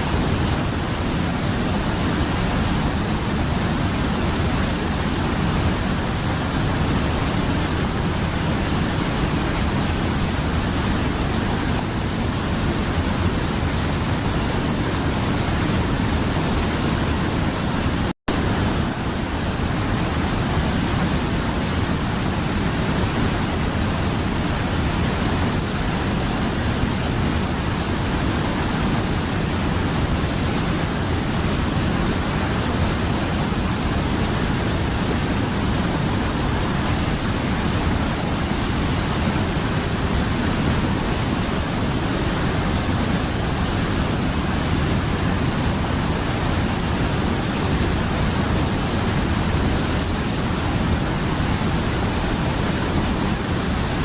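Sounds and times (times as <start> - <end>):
river water rushing: 0.0 - 54.0.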